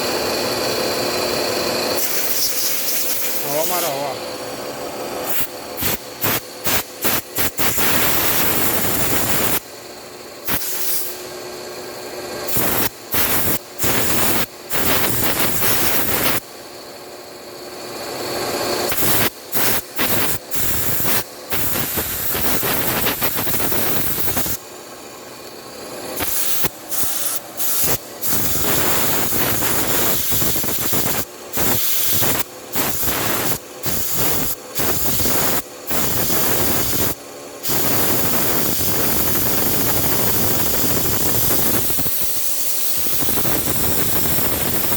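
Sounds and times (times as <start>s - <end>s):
lathe hissing: 0.2s - 9.6s.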